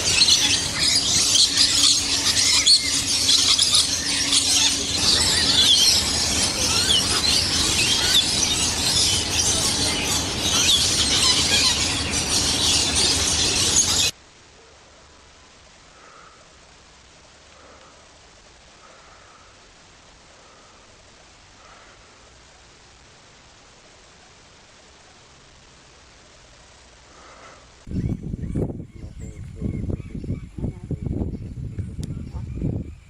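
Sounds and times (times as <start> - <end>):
many birds chirping: 0.0 - 14.2, 27.2 - 33.0.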